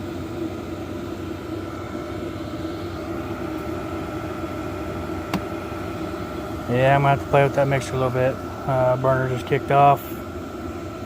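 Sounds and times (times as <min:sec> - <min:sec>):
heater blower and burner hum: 0:00.0 - 0:11.0.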